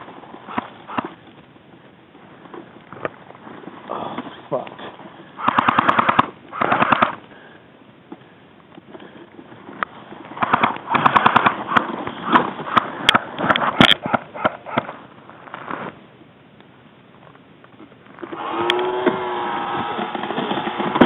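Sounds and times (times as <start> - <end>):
airsoft gun bursts: 5.4 - 7.2, 10.4 - 14.9.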